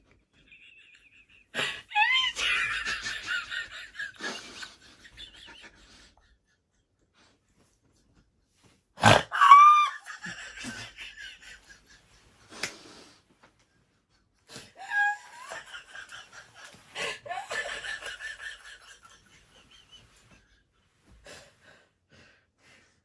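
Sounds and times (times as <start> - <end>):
person giggling: 0.3 - 6.3, 9.1 - 11.9, 14.6 - 20.1
person laughing hard: 0.4 - 6.1, 9.0 - 11.9, 14.8 - 19.7.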